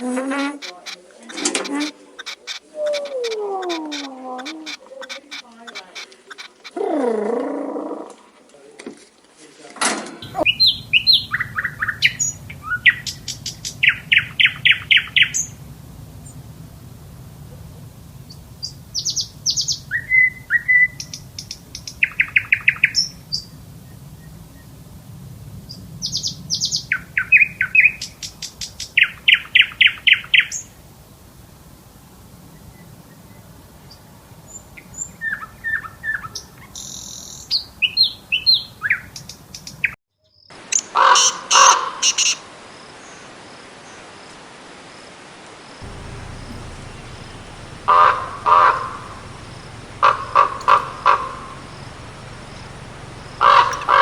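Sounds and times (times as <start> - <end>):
bird singing rapid trills: 0.6 - 6.8, 10.2 - 16.5, 17.3 - 23.6, 45.8 - 54.0
faint low hum: 10.2 - 22.1, 45.8 - 54.0.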